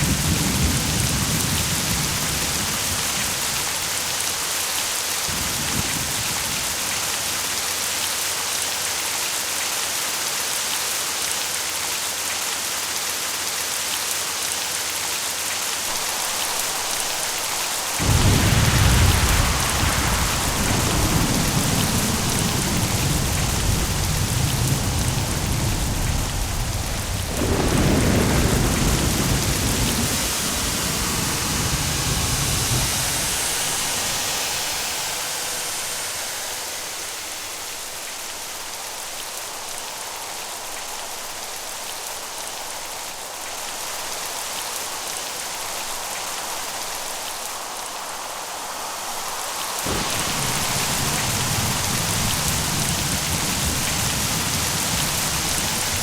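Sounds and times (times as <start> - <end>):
thunder rumbling: 0.0 - 4.3, 15.9 - 38.2, 49.9 - 56.0
steady rain: 0.0 - 56.0.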